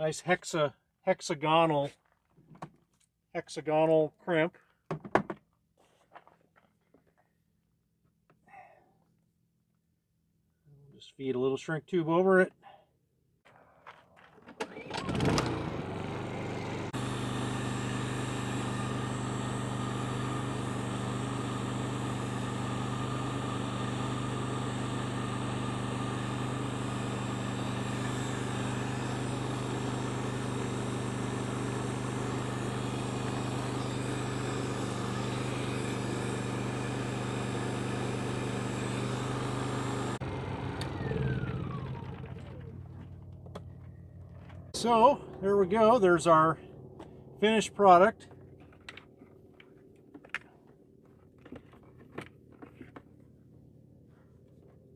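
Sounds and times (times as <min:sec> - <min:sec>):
heat gun humming and blowing air: 0:14.7 - 0:42.1.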